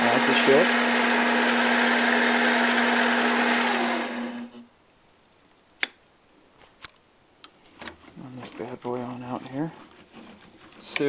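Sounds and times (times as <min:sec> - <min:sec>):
lathe motor humming and winding down: 0:00.0 - 0:04.6.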